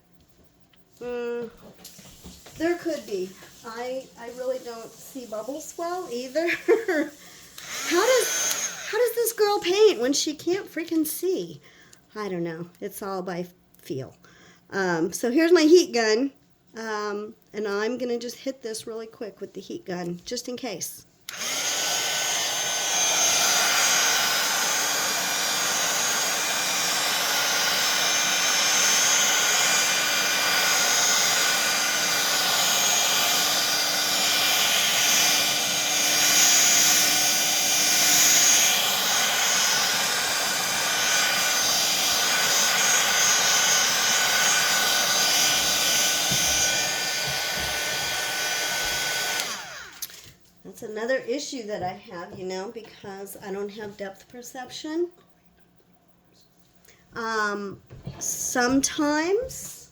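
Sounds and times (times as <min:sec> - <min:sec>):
heat gun blowing: 0:01.8 - 0:10.0, 0:21.2 - 0:50.2.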